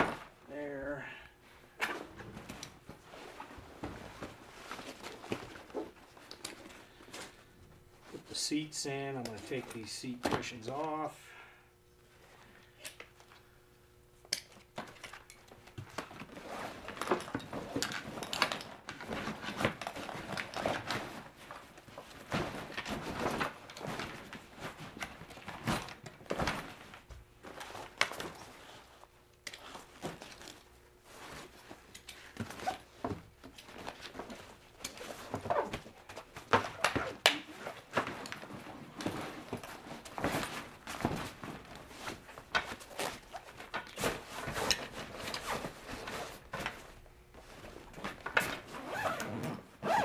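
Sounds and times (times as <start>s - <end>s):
seats rustling and knocking: 0.0s - 0.4s, 1.9s - 8.4s, 15.7s - 29.0s, 29.6s - 50.0s.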